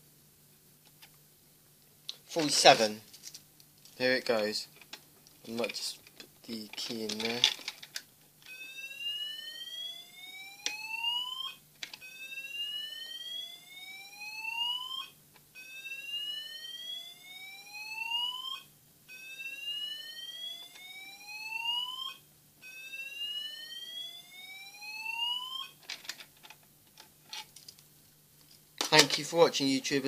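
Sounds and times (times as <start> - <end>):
fire alarm whoop tone: 8.5 - 25.8.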